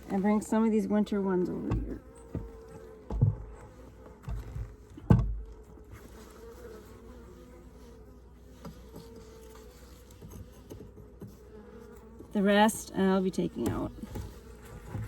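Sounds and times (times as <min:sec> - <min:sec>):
honeybees buzzing: 0:00.0 - 0:15.0
wooden hive frames knocking: 0:01.4 - 0:05.6.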